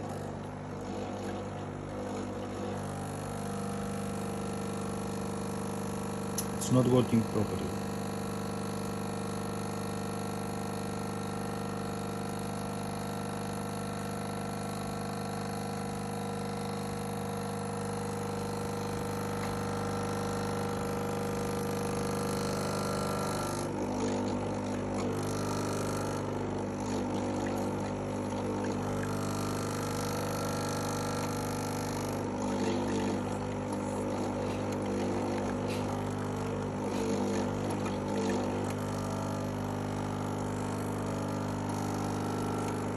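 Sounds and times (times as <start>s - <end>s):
espresso machine pump humming: 0.0s - 42.9s.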